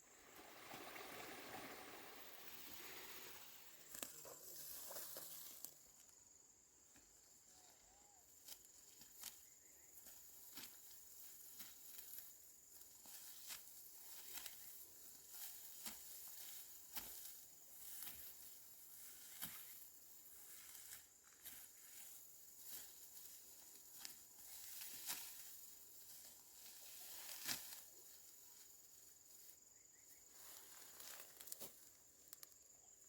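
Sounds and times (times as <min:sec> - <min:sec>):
faint crisp snaps and rustles: 0:03.9 - 0:05.0, 0:13.4 - 0:14.7, 0:27.2 - 0:27.8, 0:30.9 - 0:32.6.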